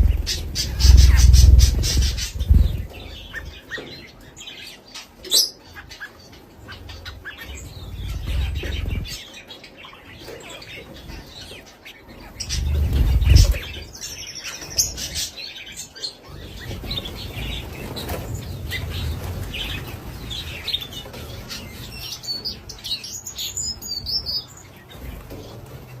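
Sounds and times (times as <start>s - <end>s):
low rumbling: 0.0s - 3.6s, 7.5s - 9.2s, 12.3s - 13.9s
birds chirping and singing: 0.0s - 26.0s.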